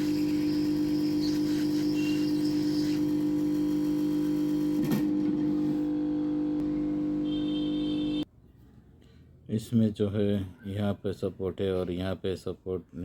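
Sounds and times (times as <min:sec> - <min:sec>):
loud steady hum: 0:04.8 - 0:08.2.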